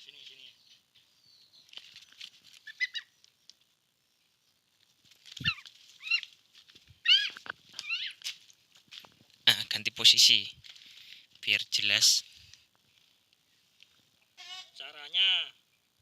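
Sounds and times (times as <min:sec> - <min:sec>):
chicken squawking: 0:02.7 - 0:03.1, 0:07.0 - 0:08.2.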